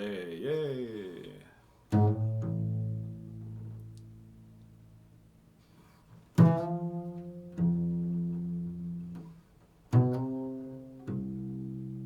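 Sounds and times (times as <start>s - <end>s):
plucked string instrument notes: 6.4s - 9.3s.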